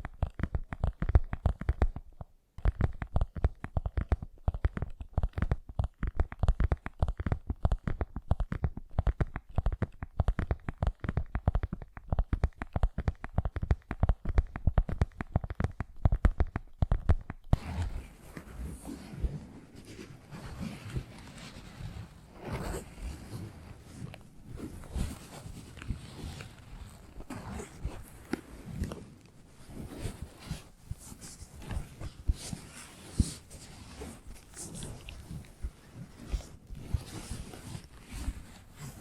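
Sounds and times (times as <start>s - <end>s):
fingertip tapping: 0.0s - 17.6s
fingertip scratching: 2.6s - 39.0s.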